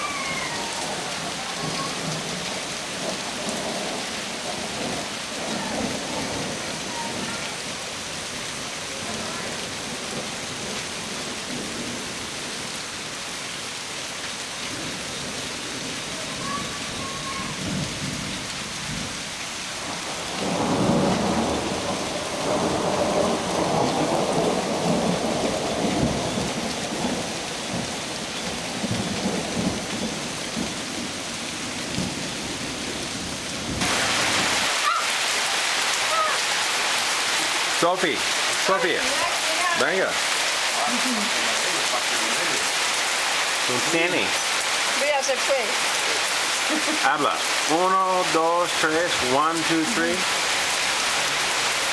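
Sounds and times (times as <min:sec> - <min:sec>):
steady rain falling: 0:00.0 - 0:51.9
rolling thunder rumble: 0:19.8 - 0:31.1.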